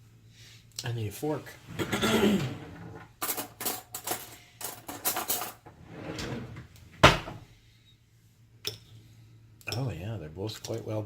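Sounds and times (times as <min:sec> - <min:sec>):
cutlery clatter: 0:01.8 - 0:05.7
drawer knock: 0:07.0 - 0:07.4.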